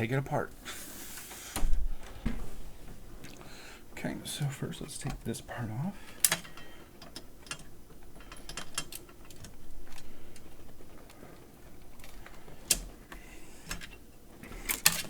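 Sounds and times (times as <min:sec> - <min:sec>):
tools clicking and rattling: 0:06.2 - 0:13.0.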